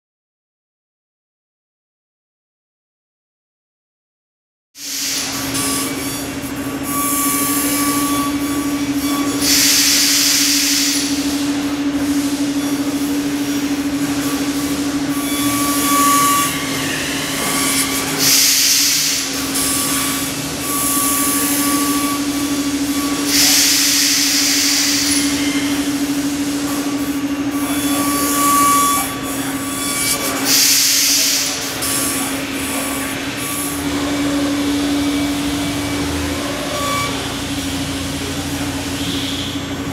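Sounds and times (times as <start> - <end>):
loud hiss bursts: 4.8 - 6.0, 9.3 - 27.0, 30.1 - 32.6
machine spindle whine: 4.8 - 39.9.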